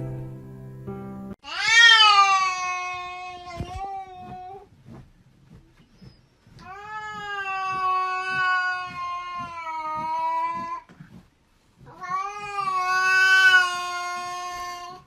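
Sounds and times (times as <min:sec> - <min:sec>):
cat yowling: 0:01.4 - 0:04.6, 0:06.7 - 0:10.8, 0:11.9 - 0:15.0.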